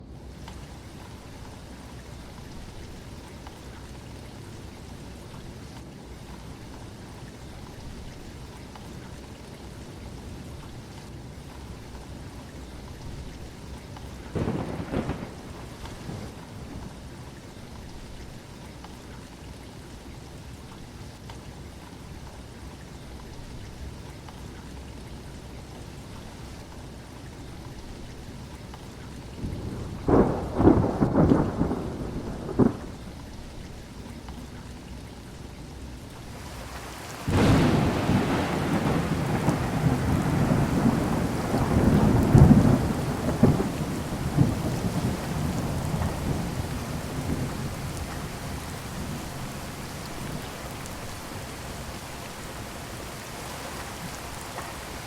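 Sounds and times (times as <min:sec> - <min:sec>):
heavy rain: 0:00.0 - 0:55.0
thunder rumbling: 0:14.2 - 0:17.4, 0:29.4 - 0:33.7, 0:36.4 - 0:55.0.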